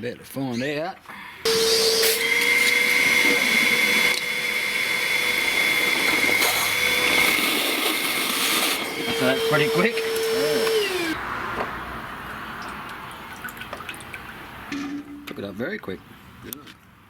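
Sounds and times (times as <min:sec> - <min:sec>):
wet dry vacuum whining: 0:01.5 - 0:11.2.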